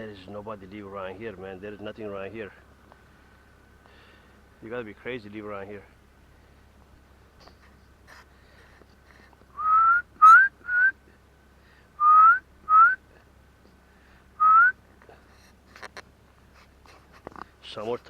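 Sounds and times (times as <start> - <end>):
breathing: 3.0 - 4.5, 7.5 - 9.4, 11.1 - 12.0, 13.8 - 14.4
person whistling short notes: 9.6 - 11.0, 12.0 - 13.0, 14.4 - 14.8.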